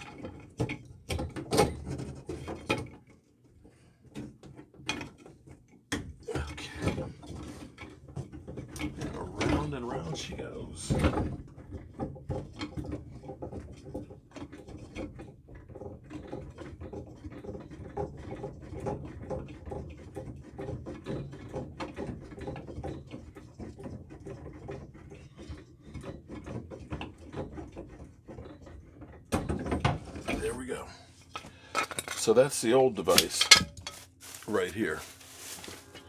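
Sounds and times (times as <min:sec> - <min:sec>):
tubing cutter scraping copper pipe: 0:11.5 - 0:36.0.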